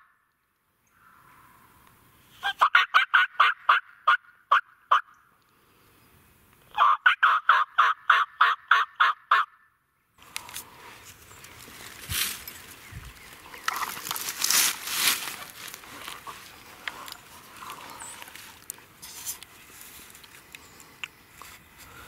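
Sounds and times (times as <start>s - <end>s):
turkey yelps: 2.4s - 5.2s, 6.7s - 9.6s
rustling: 10.2s - 22.0s.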